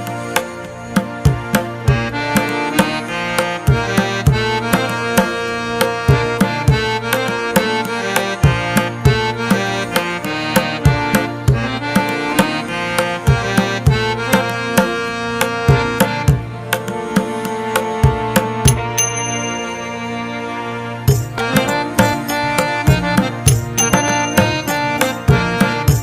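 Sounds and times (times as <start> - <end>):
hand drum beat: 13.3 - 19.6, 21.1 - 26.0
melody with sustained notes: 14.0 - 26.0.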